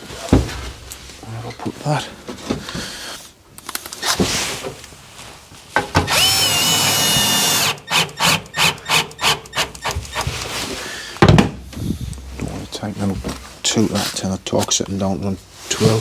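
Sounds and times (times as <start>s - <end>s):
drill driving screw into wood: 6.0s - 10.6s.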